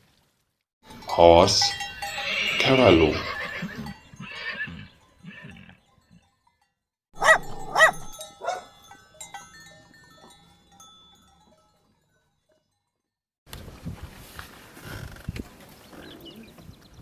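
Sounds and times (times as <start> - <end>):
dog barking: 7.2 - 8.8.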